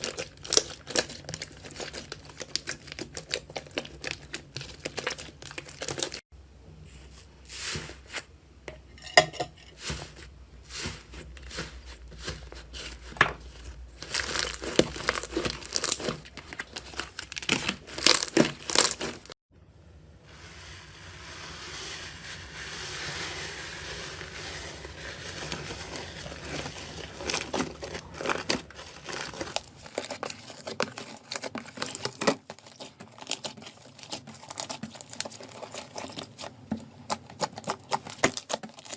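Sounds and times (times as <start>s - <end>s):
crinkling rustle: 9.8s - 19.4s, 21.8s - 38.9s
slime crackling and popping: 14.0s - 19.3s, 26.2s - 36.5s.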